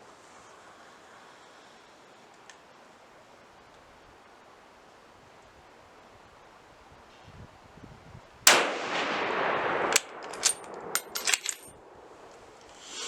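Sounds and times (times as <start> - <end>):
rifle shot: 8.5 - 11.7
rifle bolt clacking: 9.8 - 11.7.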